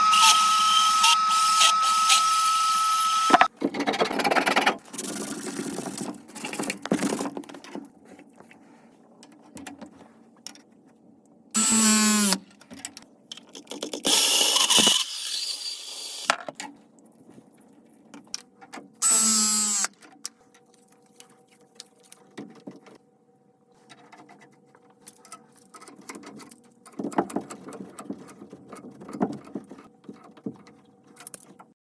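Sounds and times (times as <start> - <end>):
press tool motor whir: 0.0 - 3.5
bandsaw cutting pipe: 0.0 - 6.0.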